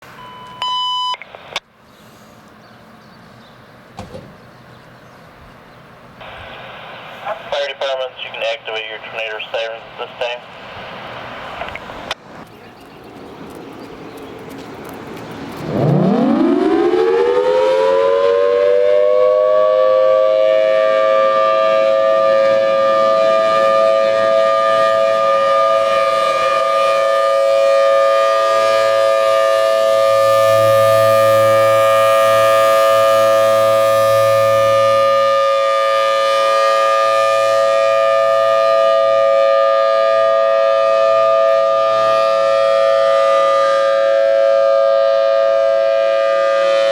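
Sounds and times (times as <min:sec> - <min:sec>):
warning siren winding up: 0:15.7 - 0:46.9.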